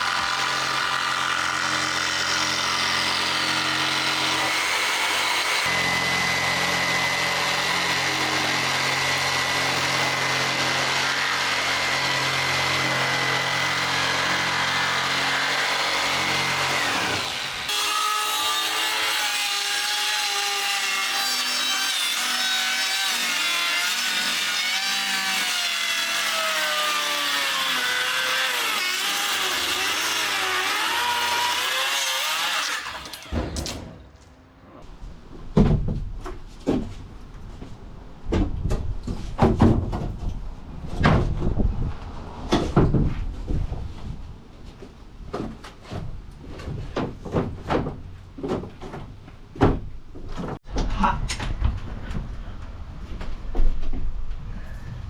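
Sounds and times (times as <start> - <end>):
jigsaw cutting plywood: 0.0 - 33.6.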